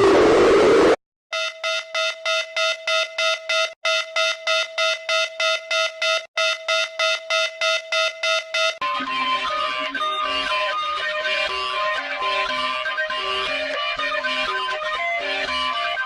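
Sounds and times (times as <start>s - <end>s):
pulsing electronic alarm tone: 0.0s - 9.2s.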